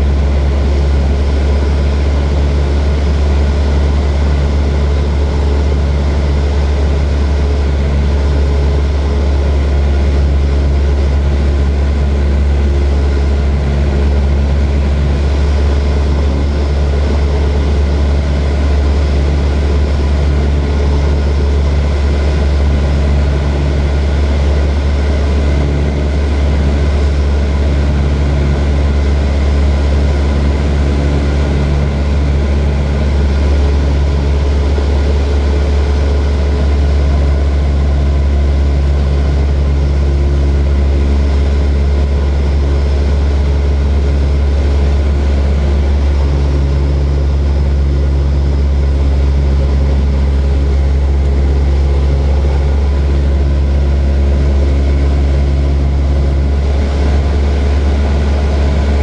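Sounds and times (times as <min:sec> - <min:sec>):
propeller airplane engine drone: 0:00.0 - 0:59.0.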